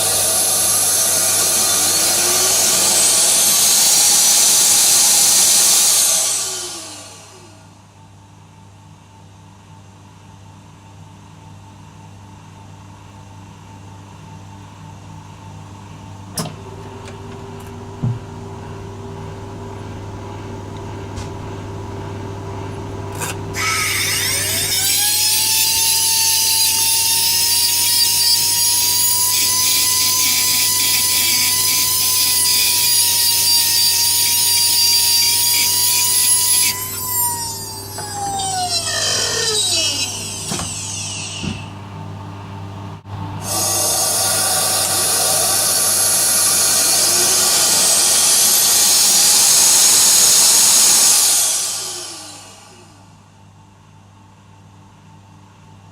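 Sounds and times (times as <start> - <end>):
loud hiss: 0.0 - 6.8, 43.4 - 52.7
power tool whine: 0.0 - 7.8, 23.2 - 41.7, 43.4 - 53.1.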